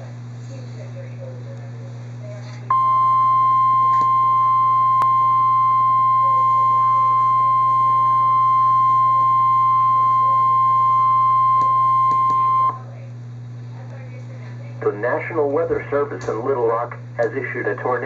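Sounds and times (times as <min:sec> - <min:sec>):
steady high alarm tone: 0:02.7 - 0:12.8
low hum: 0:02.7 - 0:13.4.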